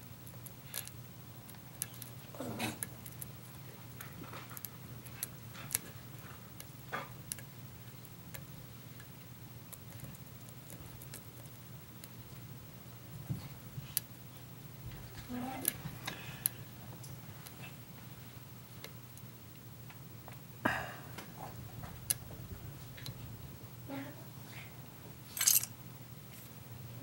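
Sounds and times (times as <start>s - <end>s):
steady low hum: 0.0s - 27.0s
metallic clicks of lock picks: 25.4s - 25.7s.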